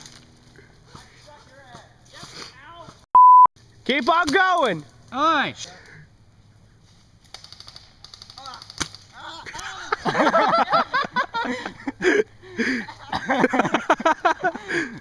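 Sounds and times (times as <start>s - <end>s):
airsoft guns firing: 7.2s - 9.2s.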